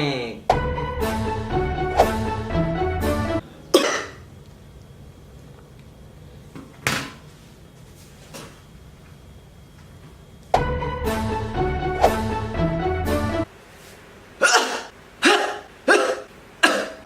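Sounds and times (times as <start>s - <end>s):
background music: 0.5s - 3.4s, 10.6s - 13.5s
person coughing: 3.7s - 4.2s, 14.4s - 17.0s.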